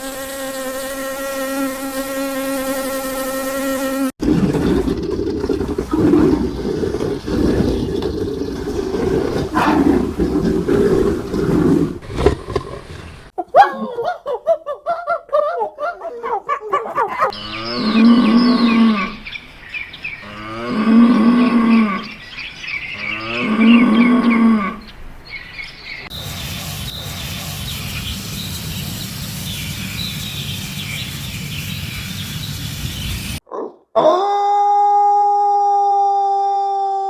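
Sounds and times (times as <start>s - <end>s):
background hiss: 17.2s - 33.4s
cow mooing: 17.3s - 19.3s, 20.2s - 22.2s.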